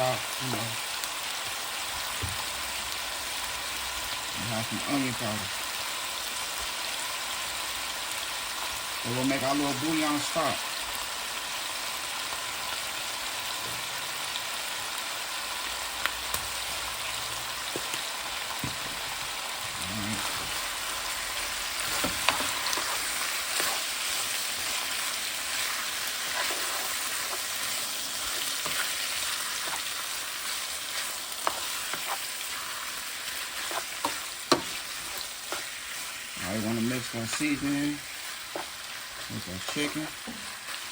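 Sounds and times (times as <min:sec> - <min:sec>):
chicken sizzling in oil: 0:00.0 - 0:40.9.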